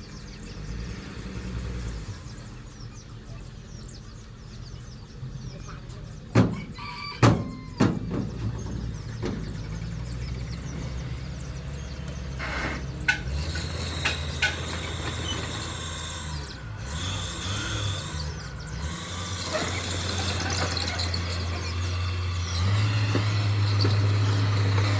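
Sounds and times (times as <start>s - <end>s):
heavy diesel machinery engine hum: 0.0s - 24.9s.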